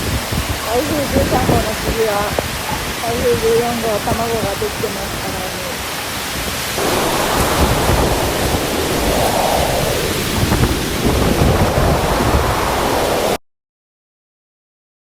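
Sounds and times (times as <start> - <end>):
strong wind buffeting microphone: 0.0 - 13.4.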